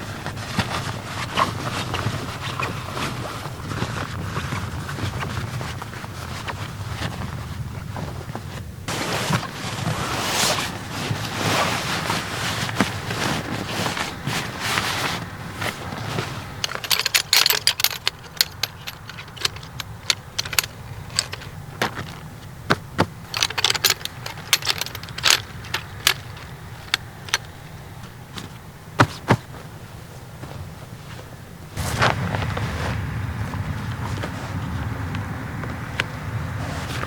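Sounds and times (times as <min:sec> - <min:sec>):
light metallic jangling: 0:16.6 - 0:28.2
wind and surf: 0:31.2 - 0:37.0.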